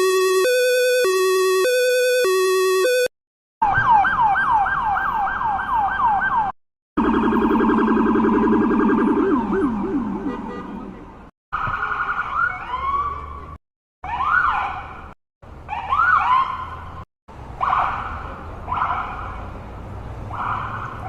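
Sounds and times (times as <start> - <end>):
ambulance siren: 0.0 - 14.6.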